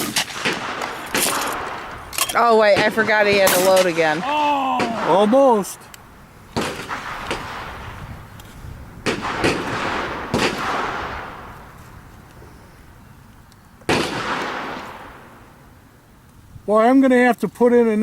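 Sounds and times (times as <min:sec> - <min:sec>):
shotgun blasts with echo: 0:00.0 - 0:05.9, 0:06.5 - 0:08.2, 0:09.0 - 0:11.8, 0:13.9 - 0:15.6.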